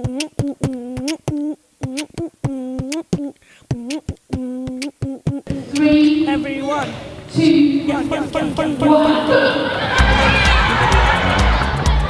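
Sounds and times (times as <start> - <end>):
hummed vocal notes bending upward: 0.0 - 6.4
sharp mouth clicks: 0.0 - 6.4.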